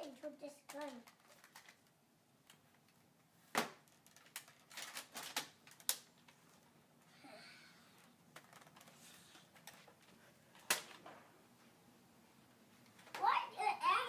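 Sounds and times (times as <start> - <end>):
toy blaster plastic clacks: 0.6 - 1.7.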